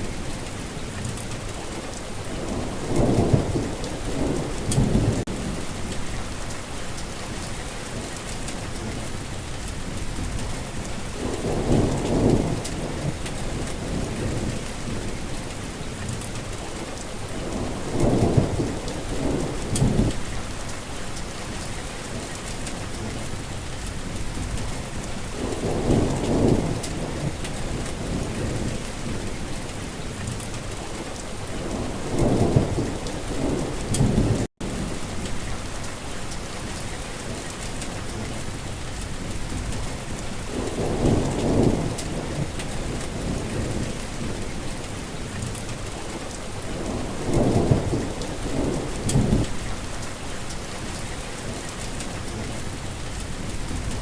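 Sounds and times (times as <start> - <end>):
heavy rain: 0.0 - 54.0
low rolls of thunder: 2.2 - 6.5, 9.8 - 15.2, 17.2 - 20.7, 24.0 - 36.0, 39.0 - 50.1.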